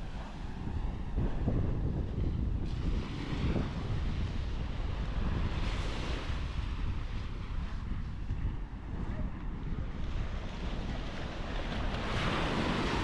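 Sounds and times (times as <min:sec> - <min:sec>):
surf washing: 0:00.0 - 0:13.0
wind buffeting microphone: 0:00.0 - 0:13.0.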